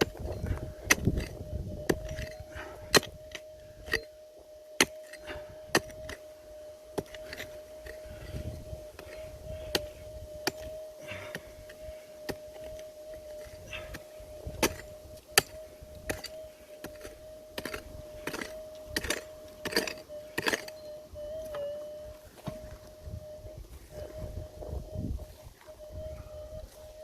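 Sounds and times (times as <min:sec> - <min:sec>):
wind rumble on microphone: 0:00.0 - 0:04.1, 0:07.0 - 0:12.0, 0:12.7 - 0:19.2, 0:21.1 - 0:27.0
metal detector hum: 0:00.0 - 0:27.0.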